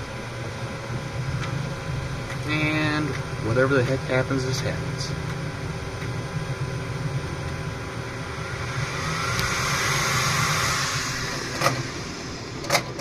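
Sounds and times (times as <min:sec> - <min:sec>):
filament feed motor whirring: 0:06.9 - 0:13.0.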